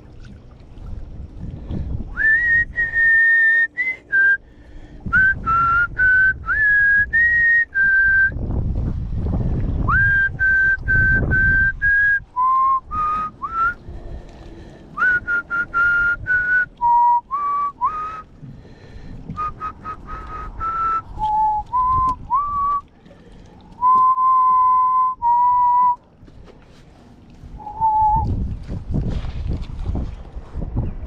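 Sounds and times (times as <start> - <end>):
wind rumble on microphone: 0.0 - 31.0
person whistling a tune: 2.2 - 4.4, 5.2 - 8.4, 9.9 - 13.8, 15.0 - 18.3, 19.4 - 22.8, 23.8 - 26.0, 27.6 - 28.3.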